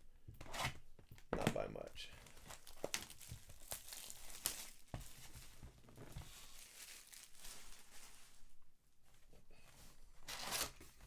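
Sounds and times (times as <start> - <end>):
wrappers crinkling and tearing: 2.1 - 8.6, 10.2 - 11.0.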